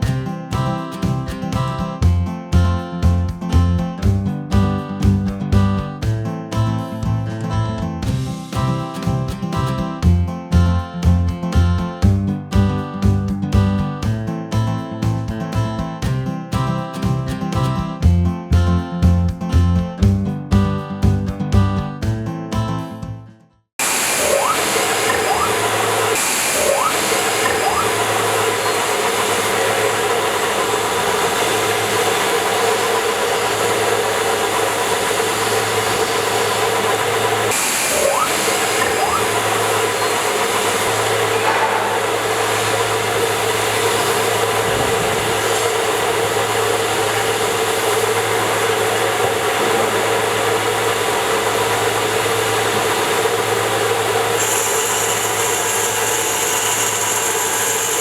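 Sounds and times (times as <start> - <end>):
tile cutting machine running: 23.8 - 58.0.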